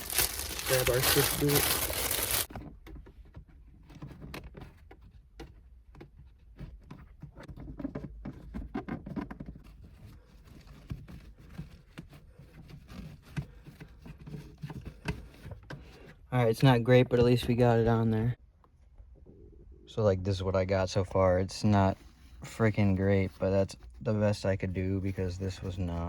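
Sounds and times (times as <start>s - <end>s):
faint rustling: 0.0s - 2.5s.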